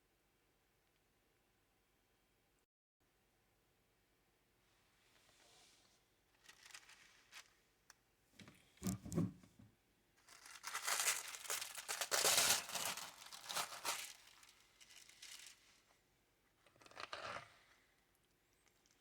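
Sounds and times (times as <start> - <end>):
plastic packaging crinkling: 6.4 - 7.6, 10.2 - 15.8.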